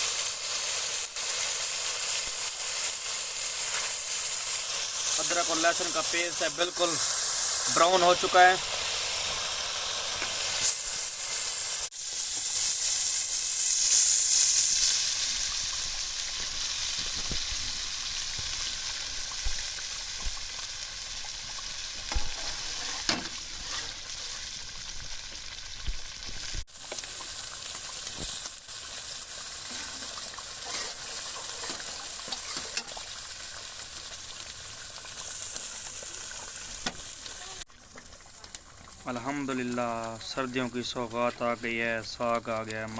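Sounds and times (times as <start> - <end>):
paste sizzling in hot oil: 0.0 - 42.9.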